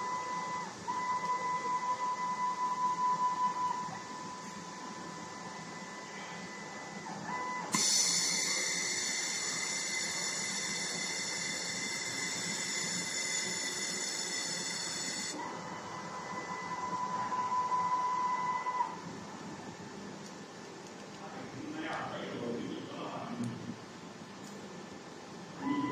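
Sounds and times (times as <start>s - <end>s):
motor whine: 7.6s - 16.5s
welding hiss with high whining tones: 7.7s - 15.4s.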